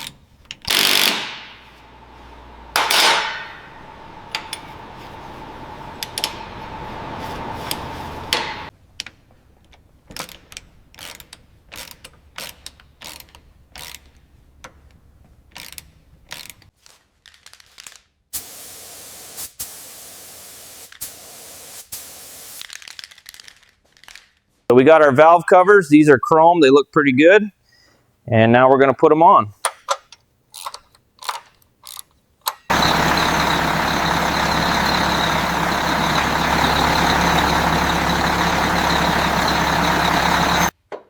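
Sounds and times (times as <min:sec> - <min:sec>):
ratchet wrench clicking: 0:00.7 - 0:01.4
loud sudden bursts: 0:00.7 - 0:08.7, 0:32.7 - 0:40.7
steady running sound: 0:00.7 - 0:08.7, 0:32.7 - 0:40.7.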